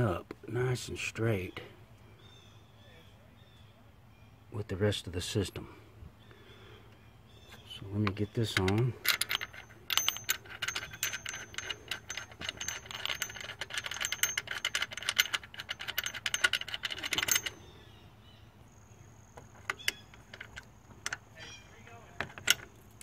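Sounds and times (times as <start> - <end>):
metallic clicks: 8.0 - 17.6, 19.4 - 21.3
ratchet wrench clicking: 8.5 - 17.5.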